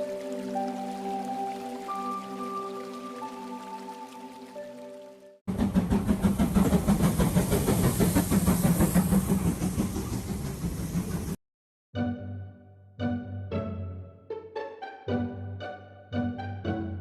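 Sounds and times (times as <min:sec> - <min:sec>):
steam locomotive running: 0:05.5 - 0:11.4.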